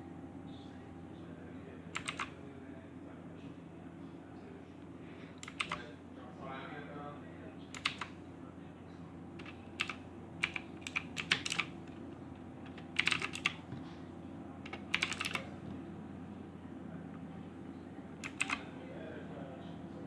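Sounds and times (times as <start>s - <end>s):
steady low hum: 0.0s - 20.0s
mechanical keyboard key clicks: 5.4s - 5.8s, 7.8s - 8.1s, 12.7s - 13.6s, 14.7s - 15.4s, 18.2s - 18.6s.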